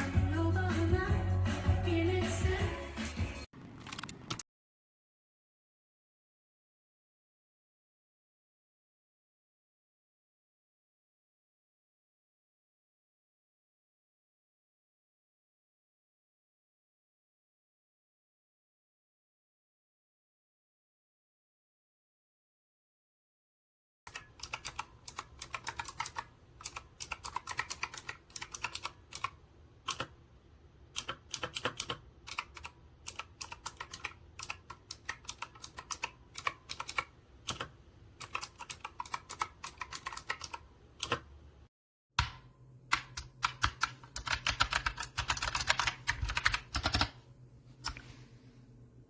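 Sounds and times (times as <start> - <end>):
clicky keyboard typing: 24.1 - 30.2, 30.9 - 41.3, 42.2 - 47.2.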